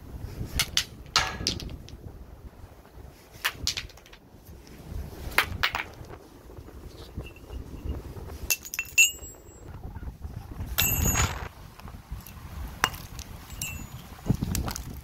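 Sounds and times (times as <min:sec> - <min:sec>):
low rumbling noise: 0:00.0 - 0:15.0
hard objects clinking: 0:03.5 - 0:04.2, 0:08.5 - 0:09.7, 0:12.2 - 0:14.8.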